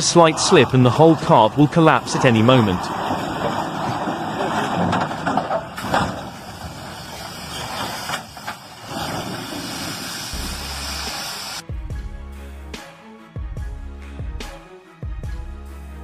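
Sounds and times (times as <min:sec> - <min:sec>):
heavy truck engine running: 0:00.0 - 0:11.6
knocks and clatter: 0:01.8 - 0:09.4.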